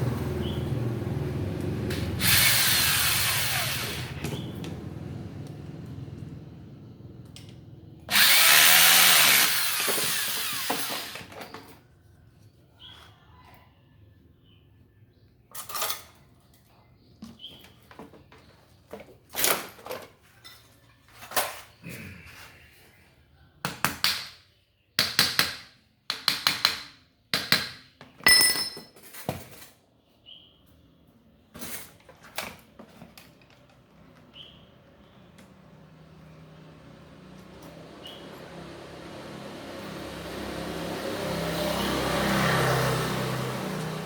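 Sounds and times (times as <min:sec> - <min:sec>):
metal parts knocking and clinking: 0:28.2 - 0:29.8.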